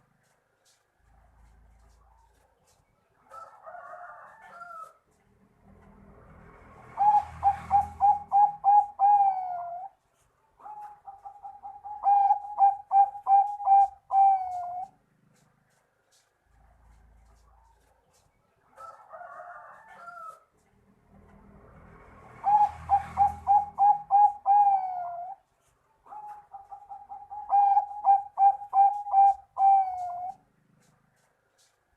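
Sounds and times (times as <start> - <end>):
dove cooing: 6.8 - 10.0, 10.6 - 15.5, 22.3 - 30.9.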